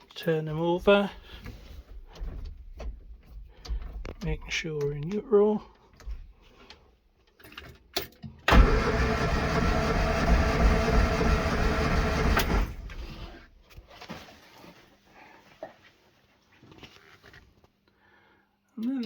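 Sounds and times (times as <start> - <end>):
engine cranking on starter motor: 8.5 - 13.4
starter click: 11.3 - 13.0.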